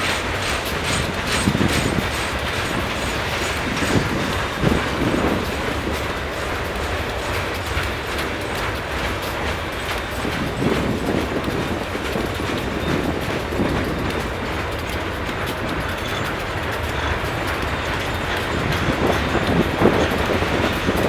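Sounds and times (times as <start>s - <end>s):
freight train rumble: 0.0s - 21.0s
wheels clicking over rail joints: 0.0s - 21.0s.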